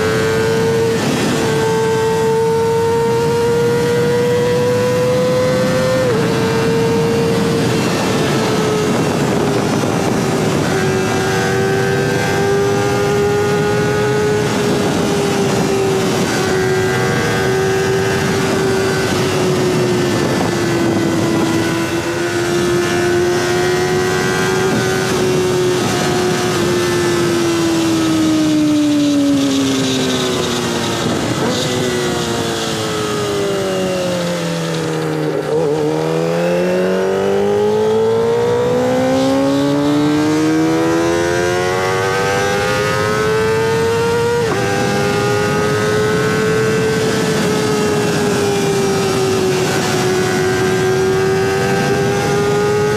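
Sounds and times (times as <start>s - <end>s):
motorcycle engine at high revs: 0.0s - 52.9s.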